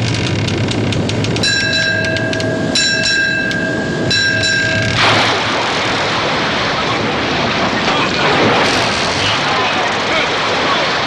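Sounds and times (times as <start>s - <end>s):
rapid regular clicking: 0.0s - 5.0s
broad rushing noise: 0.0s - 11.0s.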